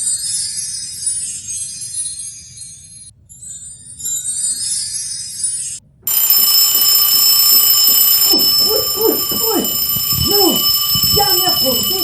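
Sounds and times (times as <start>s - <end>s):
light tinkling jingle: 0.2s - 12.0s
alarm clock ringing: 6.1s - 12.0s.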